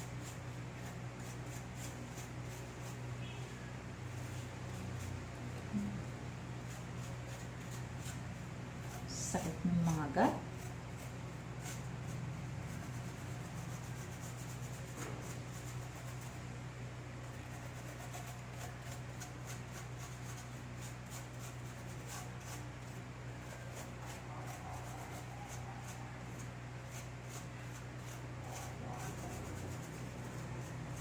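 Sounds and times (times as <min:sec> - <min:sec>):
steady low hum: 0:00.0 - 0:31.0
scratchy rubbing on keyboard: 0:04.0 - 0:16.5, 0:17.2 - 0:31.0.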